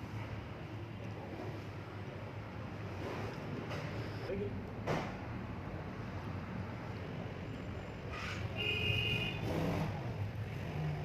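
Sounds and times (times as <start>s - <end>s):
road traffic: 0.0s - 11.0s
vehicle horn toot: 8.6s - 9.5s.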